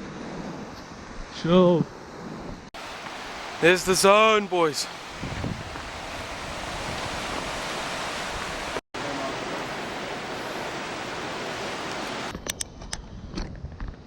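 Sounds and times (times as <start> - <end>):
ocean surf breaking: 2.2 - 12.3.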